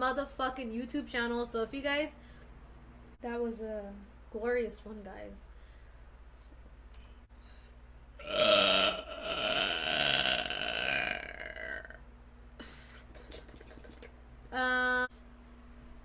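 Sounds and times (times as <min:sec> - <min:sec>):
woman belching: 0:08.2 - 0:12.0.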